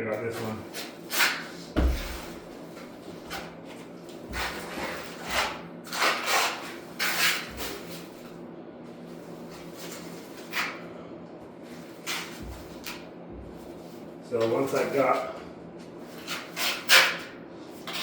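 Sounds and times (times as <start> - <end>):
dull thump: 1.8 - 2.4.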